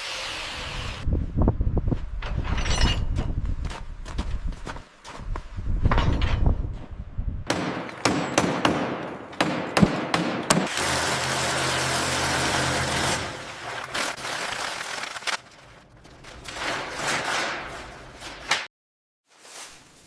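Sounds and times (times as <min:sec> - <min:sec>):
sharp knocks and clatters: 0:05.9 - 0:06.8
power tool running: 0:10.7 - 0:13.6.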